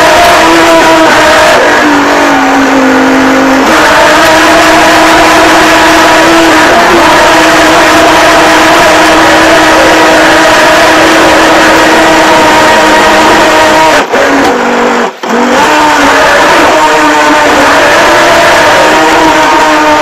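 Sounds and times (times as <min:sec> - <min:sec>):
model boat motor running: 0:07.3 - 0:18.2.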